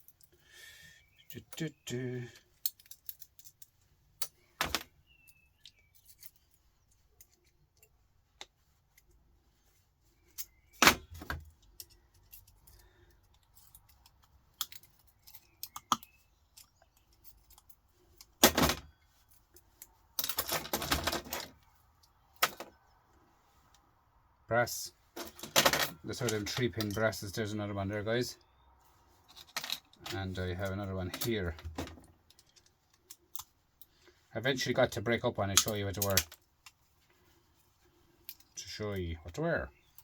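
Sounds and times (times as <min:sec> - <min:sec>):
metal parts clinking: 0:02.4 - 0:09.2, 0:10.3 - 0:21.7, 0:25.2 - 0:27.2, 0:29.2 - 0:34.0
rattling clatter of metal parts: 0:02.5 - 0:05.0, 0:16.5 - 0:21.7, 0:25.2 - 0:27.2, 0:29.2 - 0:33.5.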